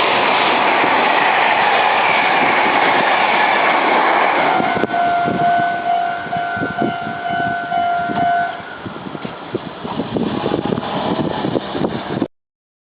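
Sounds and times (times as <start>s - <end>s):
train rumbling and clattering: 0.0s - 12.3s
level crossing warning bell: 4.5s - 8.8s.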